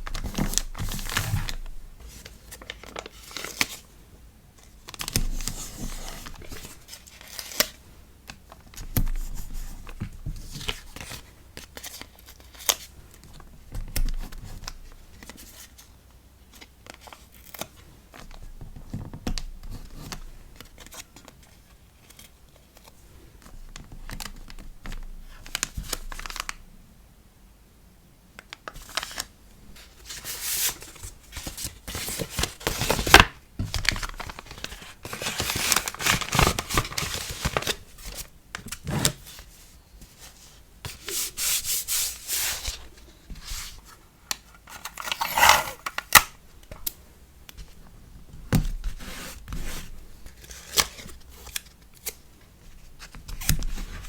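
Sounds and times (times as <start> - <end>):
packaging crinkling and rustling: 0.0 - 4.0, 16.5 - 26.6, 28.4 - 41.3, 42.0 - 46.9
packaging tearing: 31.6 - 37.8, 44.7 - 46.4.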